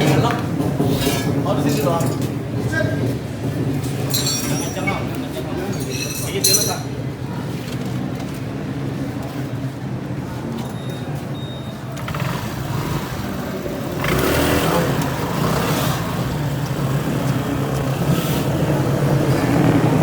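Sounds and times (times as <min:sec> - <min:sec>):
racing engines droning: 0:12.0 - 0:20.0.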